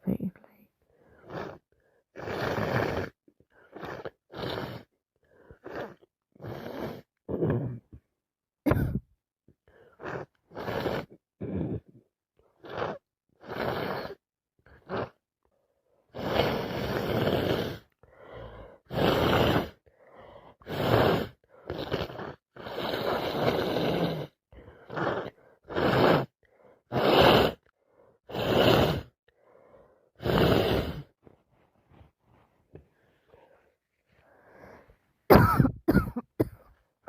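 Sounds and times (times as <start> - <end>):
woman blowing her nose: 16.2 - 17.8, 24.9 - 26.3, 26.9 - 27.6, 28.3 - 29.1.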